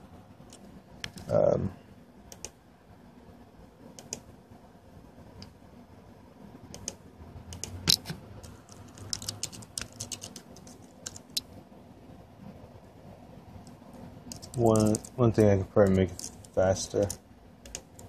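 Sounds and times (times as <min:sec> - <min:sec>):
computer keyboard typing: 0:06.7 - 0:11.5, 0:13.6 - 0:18.0.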